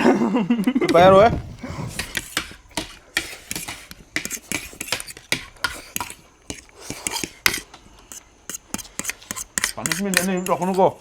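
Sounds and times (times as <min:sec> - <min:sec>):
cutlery clinking on plates: 0:08.5 - 0:10.9.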